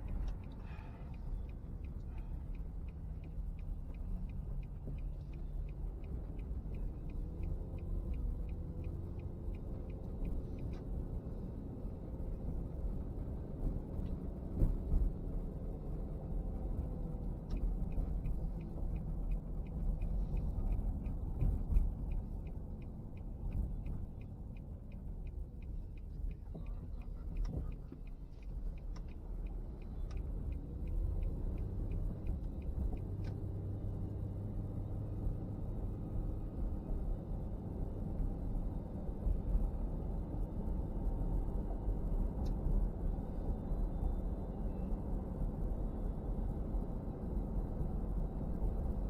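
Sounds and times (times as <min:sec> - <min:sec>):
car road and engine rumble: 0:00.0 - 0:49.0.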